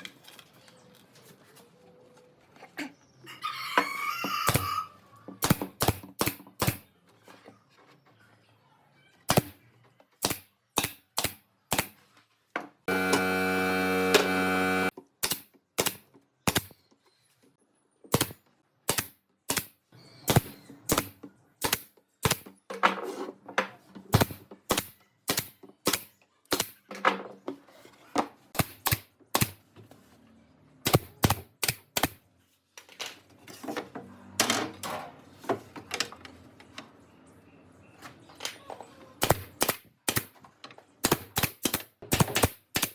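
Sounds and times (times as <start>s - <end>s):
power tool motor running: 12.9s - 14.9s.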